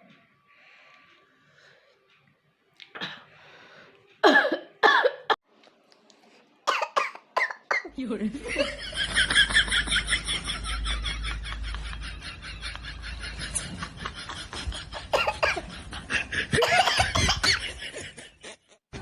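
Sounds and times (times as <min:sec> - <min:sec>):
person laughing: 0:08.6 - 0:18.8.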